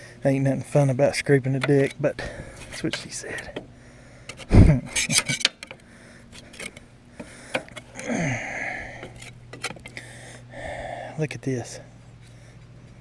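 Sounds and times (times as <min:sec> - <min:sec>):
scraper scraping grass off metal: 0:01.4 - 0:03.6, 0:04.3 - 0:05.7, 0:06.3 - 0:06.9.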